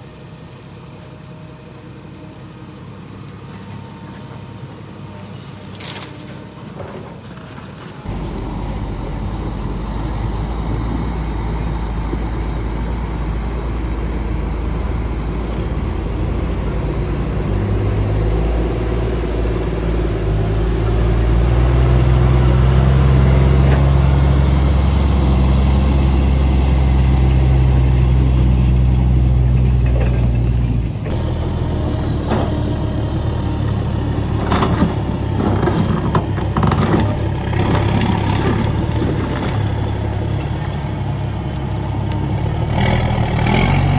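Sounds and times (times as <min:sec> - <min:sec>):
construction machine engine under load: 0:00.0 - 0:43.9.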